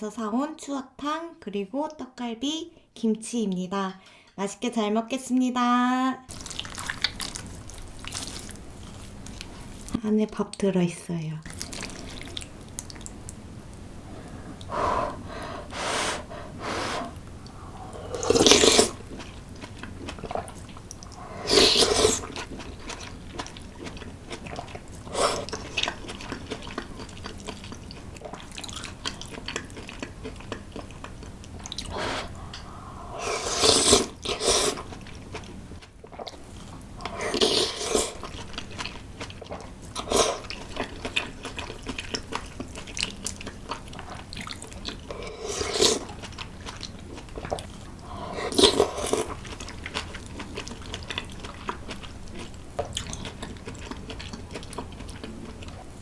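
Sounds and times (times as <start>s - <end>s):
chewing: 6.3s - 10.0s, 11.5s - 56.0s.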